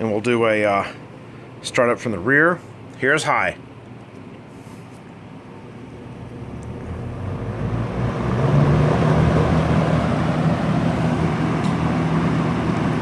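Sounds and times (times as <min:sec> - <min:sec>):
box fan whooshing: 0:05.9 - 0:13.0.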